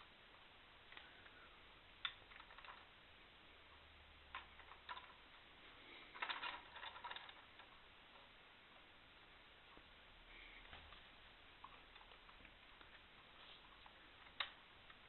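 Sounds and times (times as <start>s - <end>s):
small clicks and taps: 11.6s - 15.0s.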